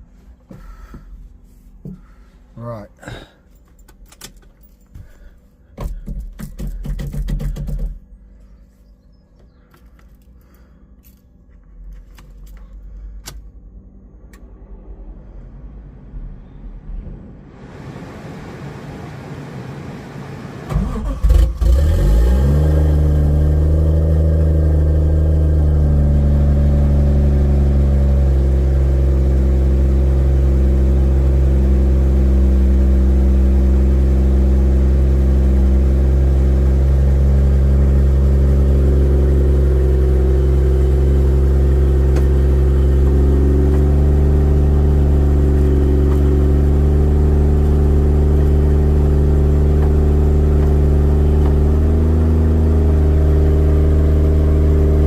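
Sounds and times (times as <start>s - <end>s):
car engine cranking and starting: 5.8s - 8.1s, 19.9s - 29.3s, 30.2s - 55.0s
car engine idling: 23.5s - 55.0s.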